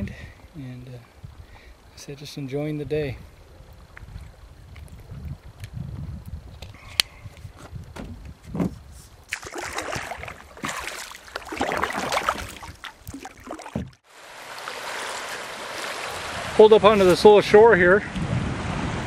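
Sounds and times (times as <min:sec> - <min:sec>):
water splashing around kayak: 0:08.9 - 0:17.5.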